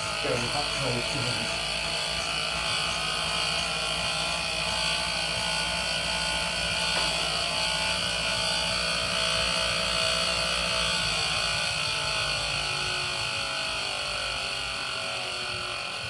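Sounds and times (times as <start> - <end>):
bike trainer high whine: 0.0 - 16.0.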